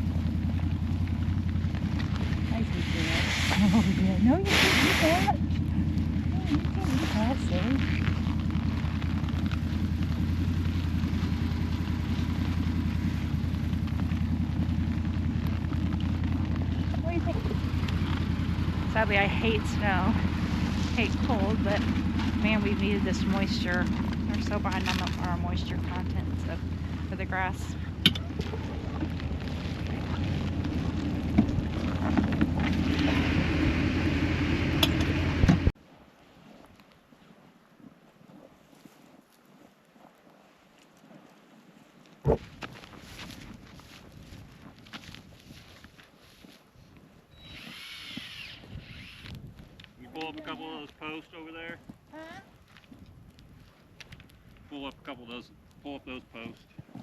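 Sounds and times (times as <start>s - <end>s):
steady low rumble: 0.0s - 35.8s, 46.7s - 57.0s
vehicle engine running: 0.0s - 35.8s, 47.4s - 56.6s.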